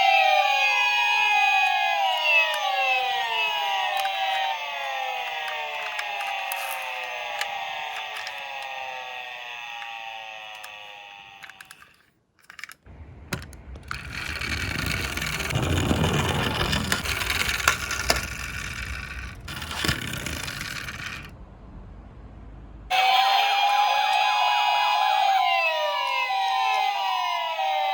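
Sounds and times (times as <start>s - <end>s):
toy electronic siren: 0.0s - 12.8s, 13.4s - 21.3s, 22.9s - 27.9s
toy cars rattling down a slope: 1.4s - 21.4s.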